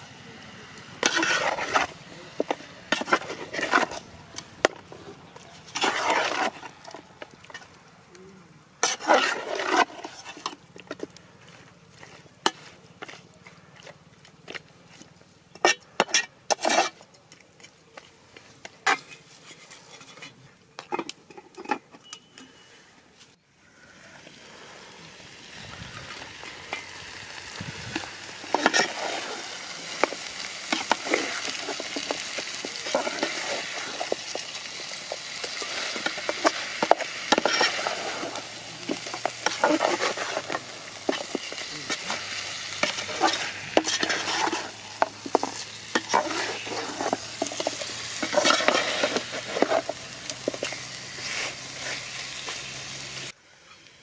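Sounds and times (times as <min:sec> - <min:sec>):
chicken sizzling in a pan: 0:00.0 - 0:04.0, 0:23.9 - 0:54.0
utensil scraping a pan: 0:01.0 - 0:07.8, 0:08.8 - 0:17.1, 0:18.6 - 0:22.2, 0:26.1 - 0:52.8.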